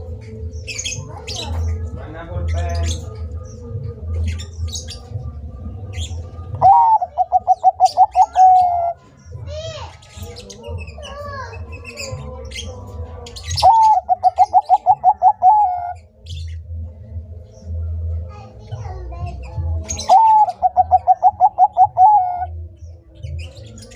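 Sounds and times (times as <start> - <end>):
small birds chirping: 0.0 - 23.9
dove cooing: 6.6 - 9.0, 13.6 - 16.0, 20.0 - 22.6.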